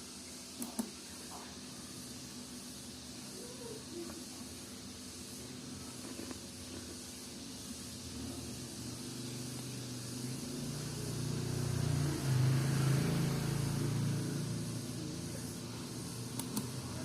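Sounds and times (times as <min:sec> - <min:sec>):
small motor humming: 0:00.0 - 0:17.0.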